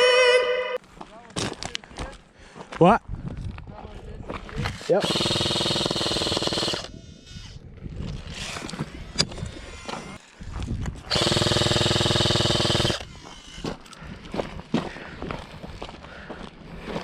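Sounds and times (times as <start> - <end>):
airsoft gun full-auto bursts: 5.0 - 7.0, 11.1 - 13.1.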